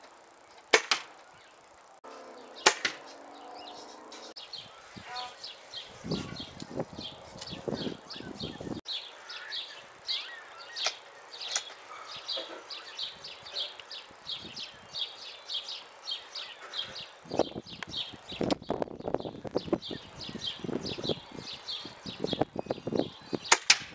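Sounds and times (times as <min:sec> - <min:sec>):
sharp clicks: 0:00.0 - 0:02.0, 0:02.6 - 0:03.2, 0:10.8 - 0:11.8, 0:17.3 - 0:18.7, 0:23.4 - 0:23.9
insect chirping: 0:00.0 - 0:23.7.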